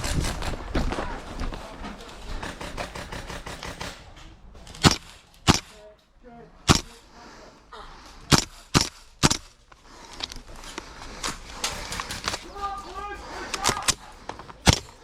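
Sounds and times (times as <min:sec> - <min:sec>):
airsoft rifle shots cracking: 0:02.4 - 0:05.8, 0:06.7 - 0:07.0, 0:08.3 - 0:09.6, 0:14.6 - 0:15.0.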